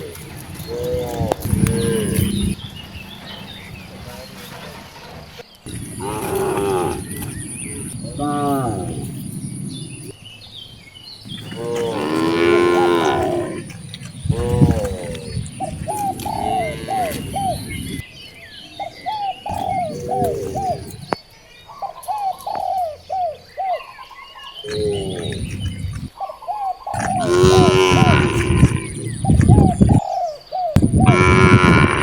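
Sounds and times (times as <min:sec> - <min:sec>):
cattle mooing: 0:05.7 - 0:09.2, 0:11.3 - 0:18.0, 0:24.7 - 0:26.1, 0:27.0 - 0:29.9, 0:31.0 - 0:32.0.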